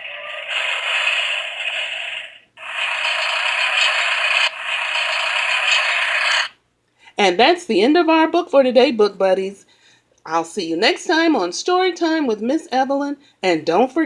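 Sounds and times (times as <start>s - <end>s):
front loader digging: 0.0s - 6.5s.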